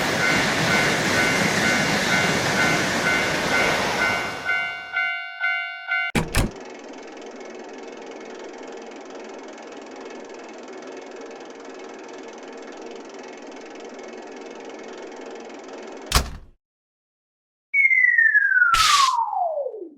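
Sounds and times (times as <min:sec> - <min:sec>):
mechanical running noise with hum: 0:06.2 - 0:16.4.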